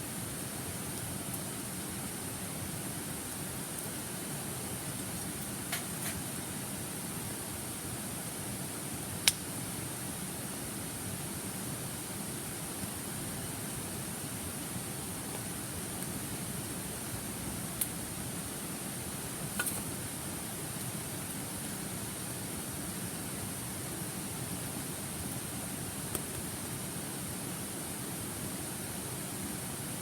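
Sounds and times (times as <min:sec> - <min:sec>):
campfire wood snapping: 0:05.2 - 0:06.3, 0:09.2 - 0:09.5, 0:19.5 - 0:20.0.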